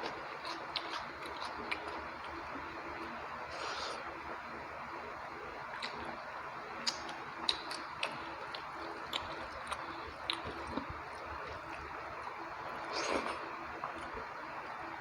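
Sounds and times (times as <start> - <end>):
wet chewing and mouth sounds: 0.0 - 4.1, 5.7 - 6.2, 6.8 - 14.9.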